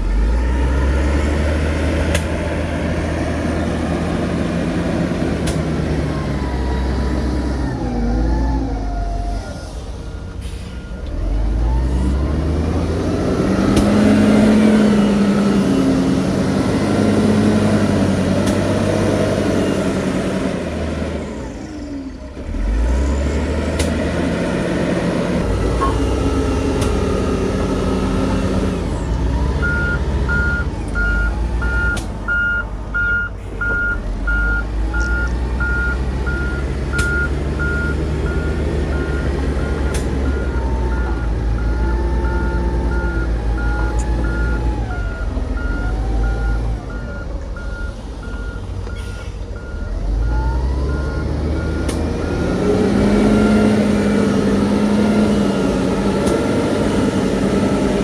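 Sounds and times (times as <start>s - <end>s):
diesel machinery engines revving: 0.0s - 58.0s
reversing alarm beeping: 25.5s - 55.7s.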